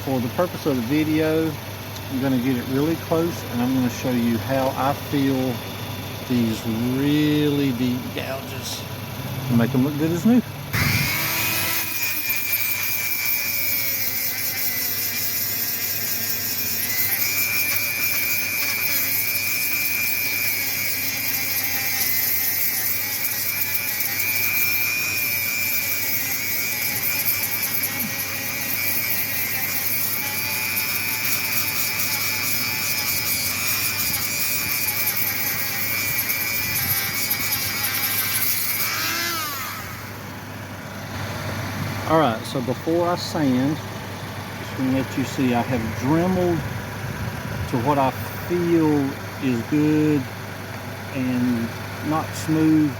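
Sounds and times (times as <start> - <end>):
rotary tool grinding: 10.0 - 41.2, 42.6 - 52.9.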